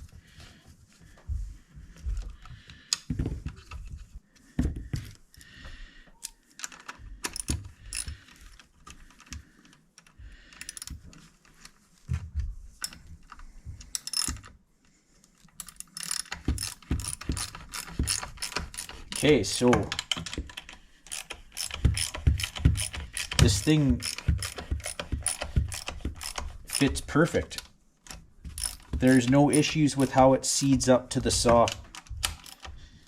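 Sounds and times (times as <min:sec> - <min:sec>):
metal parts clicking and knocking: 0:06.2 - 0:11.7, 0:12.8 - 0:14.6, 0:15.4 - 0:32.8
ratchet-like clicking: 0:15.6 - 0:19.3, 0:21.1 - 0:27.0, 0:28.6 - 0:30.2.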